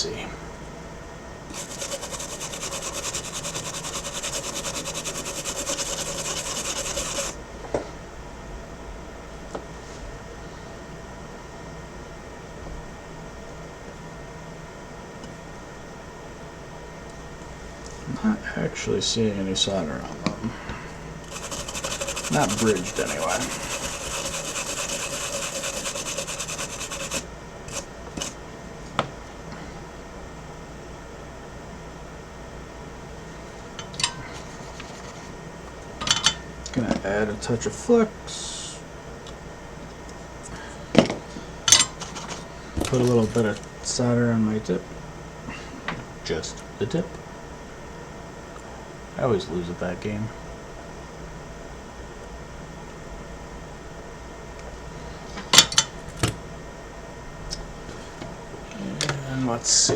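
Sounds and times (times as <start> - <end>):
fast even scraping: 1.5 - 7.4, 21.2 - 28.4.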